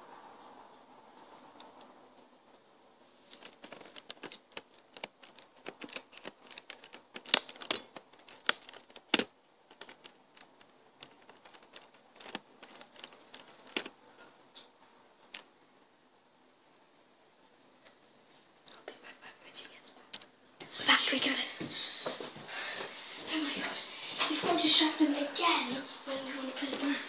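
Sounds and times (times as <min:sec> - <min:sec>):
small objects clicking and knocking: 0:03.3 - 0:13.9.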